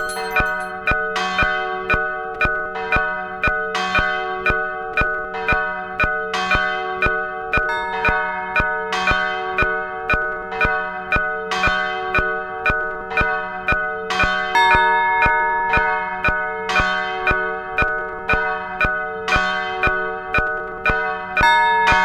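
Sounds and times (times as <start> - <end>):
church bells pealing: 7.7 - 10.0, 13.4 - 17.8.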